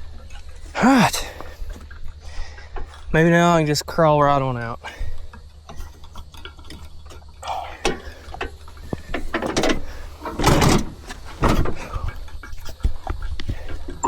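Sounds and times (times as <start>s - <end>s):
knocks and clicks of handling: 5.3s - 14.0s.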